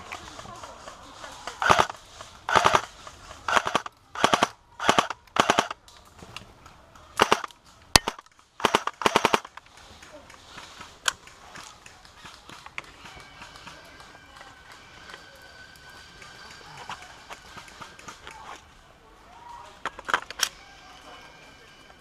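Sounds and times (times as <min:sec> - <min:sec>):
sharp clicks: 0:00.0 - 0:15.2
airsoft rifle automatic fire: 0:01.6 - 0:05.8, 0:07.2 - 0:09.6.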